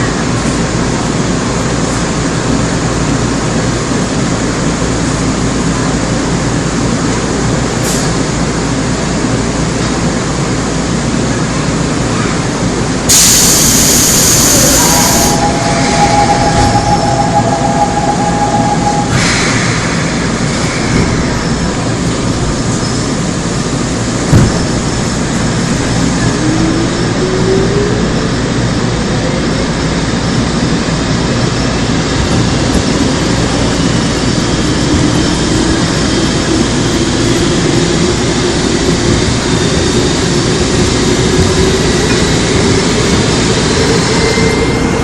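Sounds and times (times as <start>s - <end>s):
subway train rumble: 0.0s - 45.0s
loud hiss: 13.1s - 16.2s
two-note tone: 14.6s - 19.2s.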